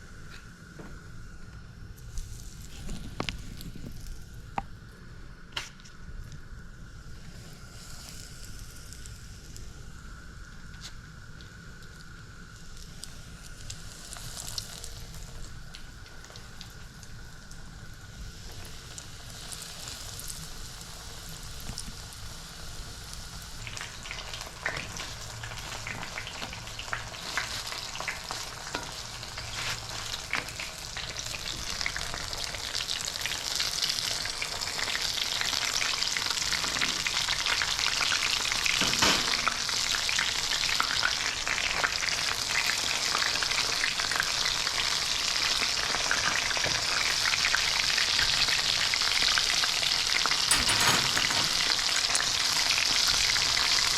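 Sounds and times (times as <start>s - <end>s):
hot oil sizzling: 0.0s - 53.9s.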